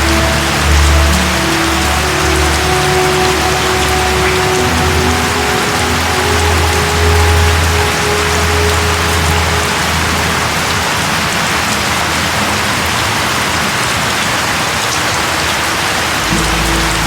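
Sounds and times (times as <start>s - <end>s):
rain pattering: 0.0s - 17.0s.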